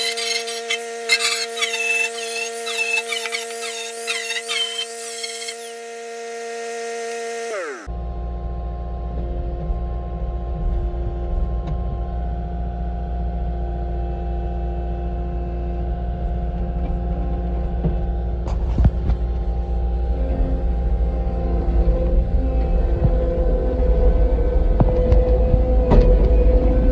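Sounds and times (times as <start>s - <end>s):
skid steer engine running: 5.4s - 26.9s
falling whine: 18.7s - 26.9s.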